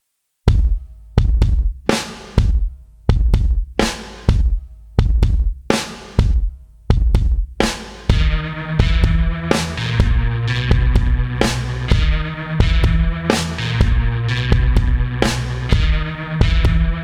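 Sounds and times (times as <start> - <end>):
drum beat with heavy bass drum: 0.5 - 17.0
sustained synth notes: 8.1 - 17.0.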